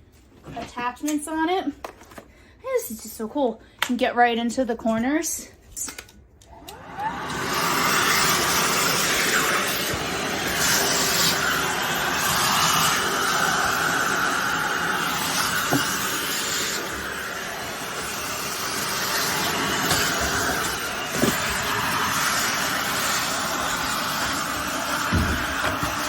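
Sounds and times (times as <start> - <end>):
cordless vacuum running: 6.5 - 26.0.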